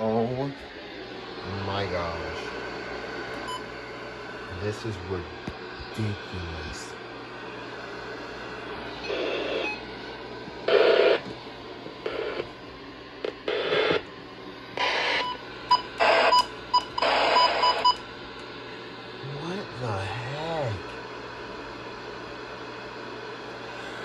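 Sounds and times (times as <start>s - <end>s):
static bursts with tones: 5.8s - 12.6s, 13.2s - 14.1s, 14.7s - 16.4s, 17.0s - 17.9s.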